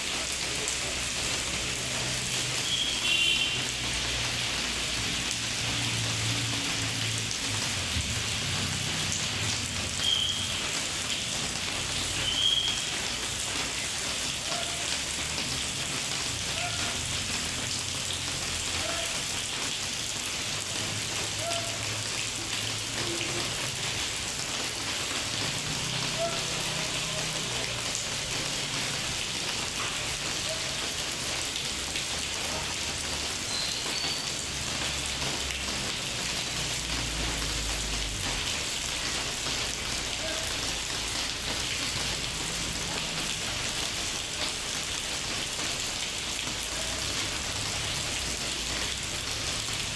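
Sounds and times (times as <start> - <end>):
heavy rain: 0.0 - 49.9.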